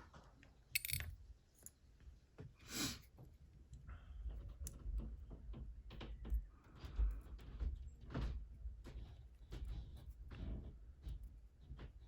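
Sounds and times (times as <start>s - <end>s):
small metal parts clicking: 0.8s - 1.7s.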